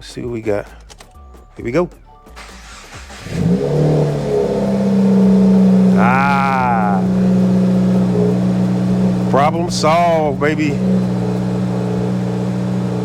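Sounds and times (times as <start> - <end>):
car engine starting and idling: 0.0 - 13.0
rising and falling voice-like call: 5.9 - 7.1.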